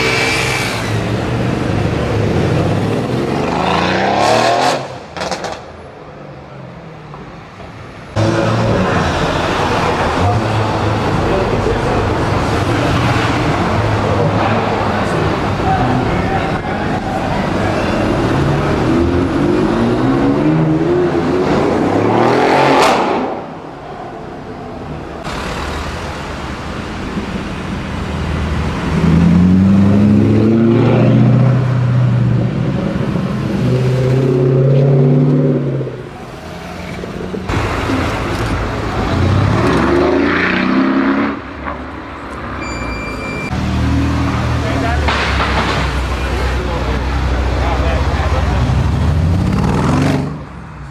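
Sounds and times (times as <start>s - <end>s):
car engine revving: 25.2s - 41.5s.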